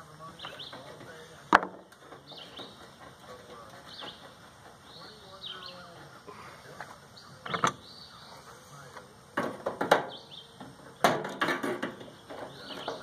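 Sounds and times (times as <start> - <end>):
birds chirping: 0.0 - 13.0
metal parts and tools rattling: 7.4 - 7.8.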